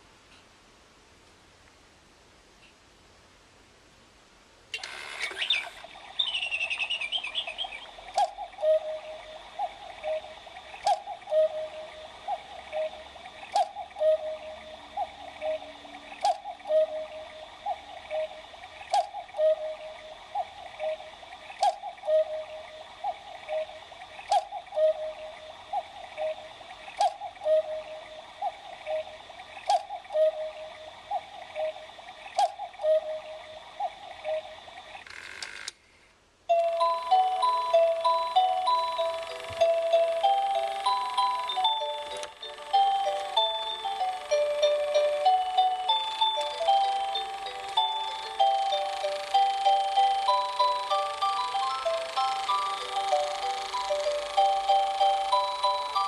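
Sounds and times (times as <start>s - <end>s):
cuckoo clock calls: 4.8s - 35.7s, 36.5s - 56.0s
high twittering: 5.3s - 35.1s, 36.5s - 56.0s
sharp clock click: 16.2s - 16.5s, 18.9s - 19.2s.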